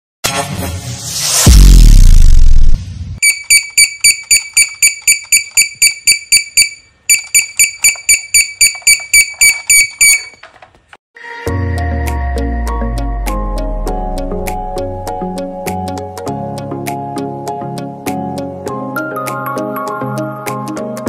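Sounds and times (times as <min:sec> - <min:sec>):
loud deep boom: 0:01.5 - 0:03.2
electronic alarm buzzer beeping: 0:03.2 - 0:10.5.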